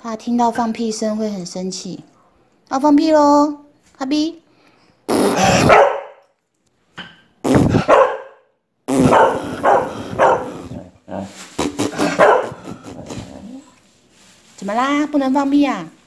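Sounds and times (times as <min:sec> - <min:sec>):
fart sound: 0:05.1 - 0:05.8, 0:07.4 - 0:07.9, 0:08.9 - 0:10.9, 0:11.5 - 0:12.2
dog barking angrily: 0:05.4 - 0:06.2, 0:07.7 - 0:10.9, 0:12.0 - 0:12.7.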